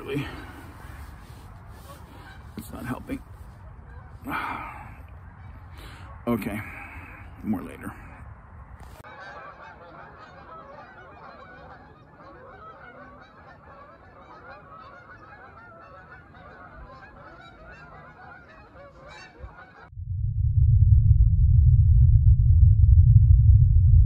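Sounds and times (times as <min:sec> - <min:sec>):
geese honking: 0:00.0 - 0:03.2, 0:09.0 - 0:19.9.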